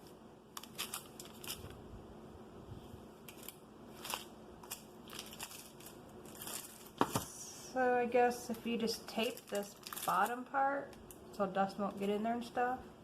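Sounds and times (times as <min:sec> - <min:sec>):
plastic wrap crinkling: 0:00.0 - 0:01.9, 0:03.2 - 0:07.3, 0:08.5 - 0:11.3.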